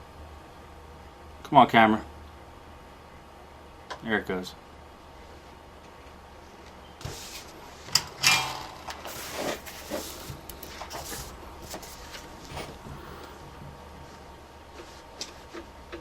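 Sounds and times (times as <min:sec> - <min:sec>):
short scrape: 0:09.1 - 0:13.4.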